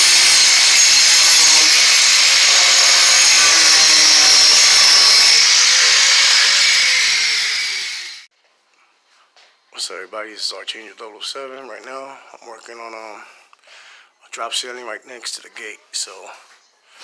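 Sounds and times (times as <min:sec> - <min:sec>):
power tool hissing: 0:00.0 - 0:08.3.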